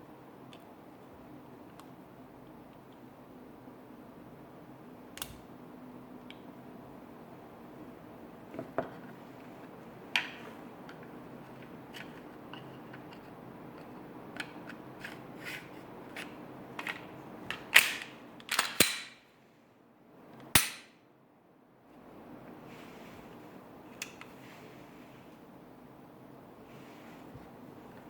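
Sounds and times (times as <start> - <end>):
pistol mechanical clicks: 17.5 - 19.2, 20.6 - 20.9.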